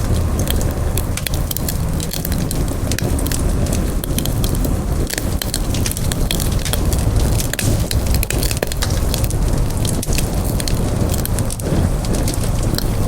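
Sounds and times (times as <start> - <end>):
campfire crackling and popping: 0.0 - 13.0
low steady rumble: 0.0 - 13.0.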